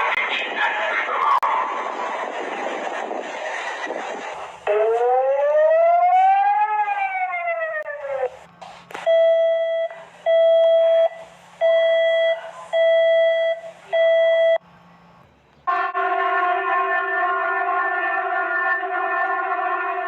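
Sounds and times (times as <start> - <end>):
loud alarm beeps: 9.1 - 15.2.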